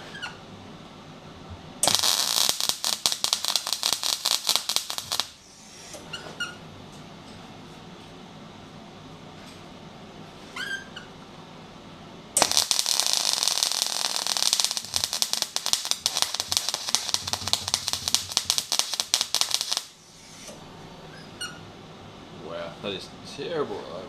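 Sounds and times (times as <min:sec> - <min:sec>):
welding arc crackling and popping: 0:01.8 - 0:06.0, 0:12.4 - 0:20.6.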